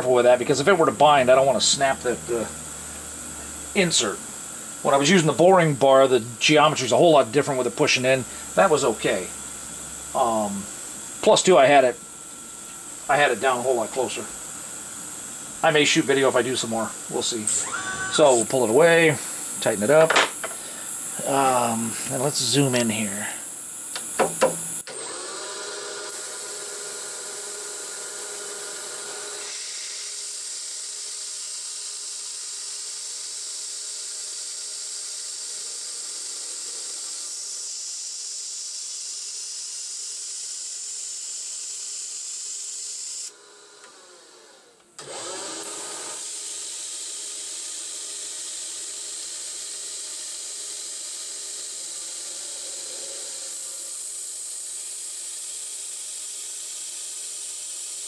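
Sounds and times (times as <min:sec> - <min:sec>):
high hiss of cutting: 0:00.0 - 0:25.2, 0:29.4 - 0:30.3
metal lathe motor whine: 0:00.0 - 0:58.0.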